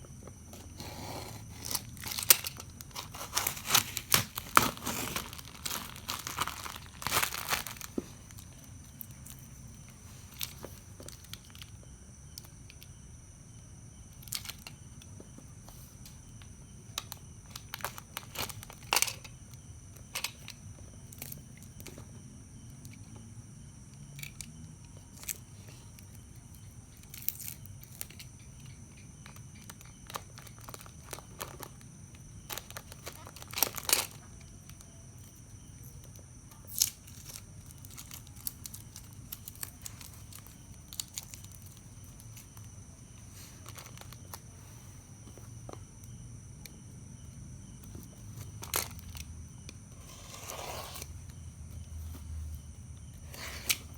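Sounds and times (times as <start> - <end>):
plastic packaging crinkling and tearing: 1.5 - 9.4, 30.0 - 31.8, 32.5 - 34.3, 36.7 - 42.5.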